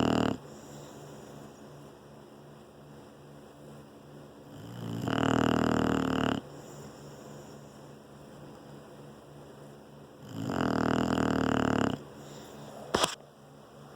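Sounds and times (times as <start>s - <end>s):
dog snoring: 0.0s - 1.5s, 4.5s - 7.6s, 10.2s - 12.4s
dog breathing quietly: 0.4s - 2.0s.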